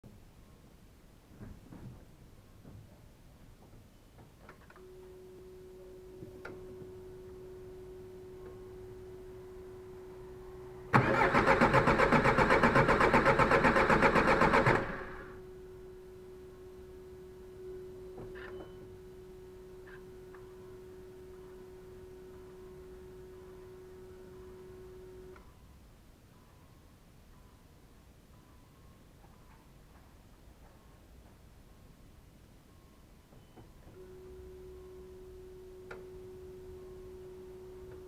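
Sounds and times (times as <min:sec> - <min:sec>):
steady electronic tone: 0:04.8 - 0:11.0, 0:14.8 - 0:25.8, 0:34.0 - 0:38.0
diesel engine cranking: 0:10.9 - 0:15.4.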